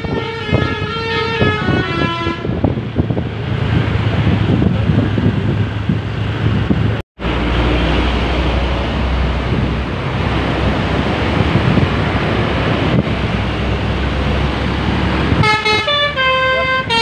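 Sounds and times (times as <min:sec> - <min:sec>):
musical bus horn playing a tune: 0:00.0 - 0:02.6, 0:15.4 - 0:17.0
bus engine and road noise: 0:00.0 - 0:17.0.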